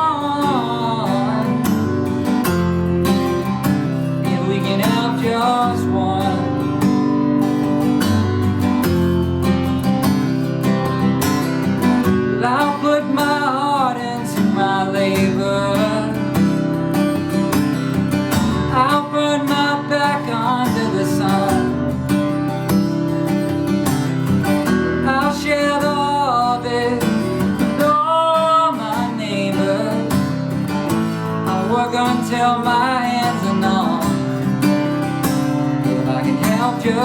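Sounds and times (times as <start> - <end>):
acoustic guitar strumming: 0.0 - 37.0.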